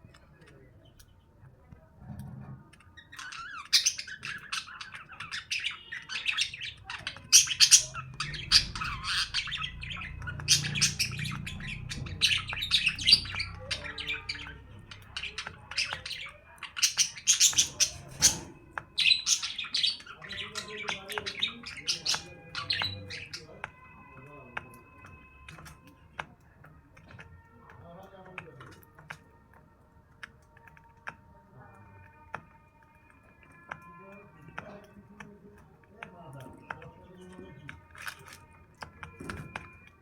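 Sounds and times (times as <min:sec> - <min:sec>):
parrots chirping and squawking: 0:02.4 - 0:25.9.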